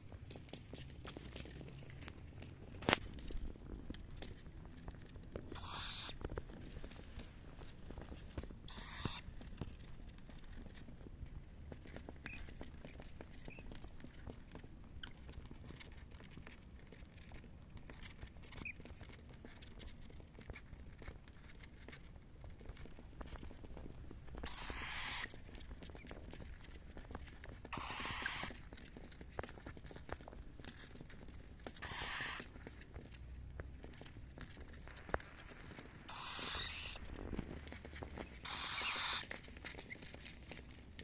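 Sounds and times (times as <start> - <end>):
birds scuffling and scratching: 0.0 - 41.0
raspy hissing bursts: 27.8 - 28.5, 31.8 - 32.4, 36.1 - 37.1, 38.5 - 39.3.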